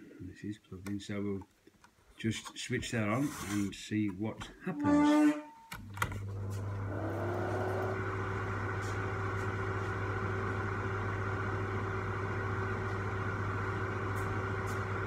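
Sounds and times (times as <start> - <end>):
fan heater motor whirring: 6.0 - 15.0.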